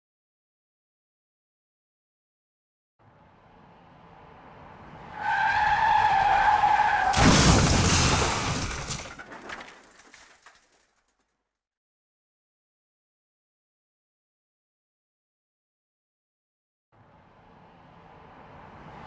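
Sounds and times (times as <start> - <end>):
car crash: 5.0 - 11.1
tyres screeching: 5.2 - 8.4
debris rattling: 7.1 - 11.2.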